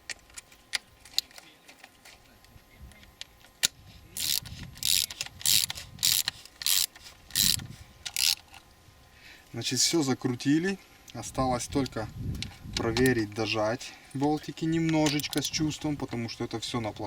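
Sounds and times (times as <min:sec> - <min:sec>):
ratchet wrench clicking: 0:04.2 - 0:08.5.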